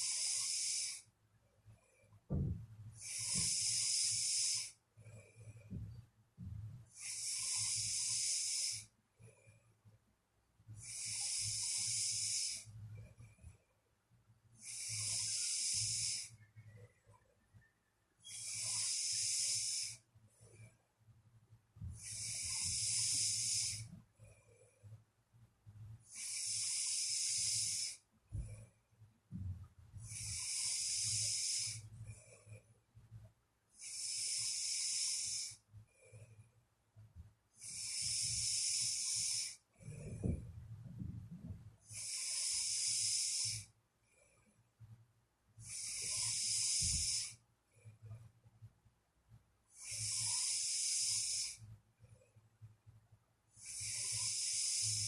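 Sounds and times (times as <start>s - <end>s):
person snoring: 0.0s - 1.0s, 3.0s - 4.8s, 7.0s - 8.9s, 10.8s - 12.7s, 14.6s - 16.3s, 18.3s - 20.0s, 22.0s - 23.9s, 26.1s - 28.0s, 30.0s - 31.8s, 33.8s - 35.6s, 37.6s - 40.4s, 41.9s - 43.7s, 45.6s - 47.4s, 49.8s - 51.6s, 53.6s - 55.0s.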